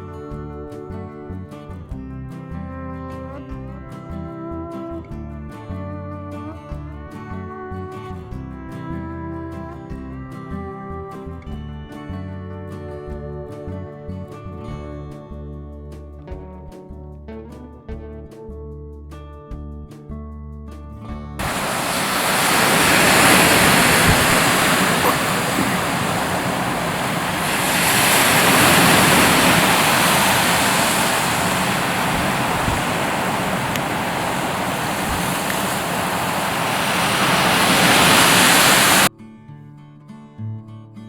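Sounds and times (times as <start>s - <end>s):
music: 0.0s - 21.4s, 39.1s - 41.0s
ocean surf washing ashore: 21.4s - 39.1s.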